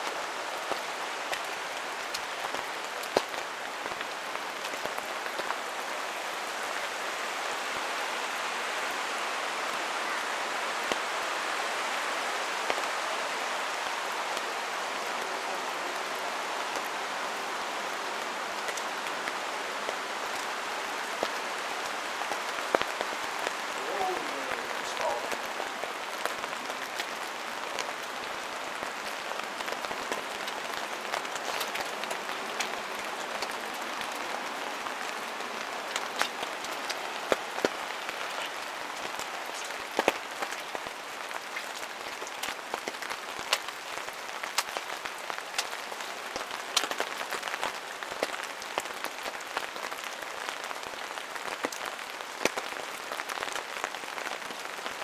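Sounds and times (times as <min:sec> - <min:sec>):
rain hissing in forest: 0:00.0 - 0:55.0
raindrops ticking: 0:18.5 - 0:49.4.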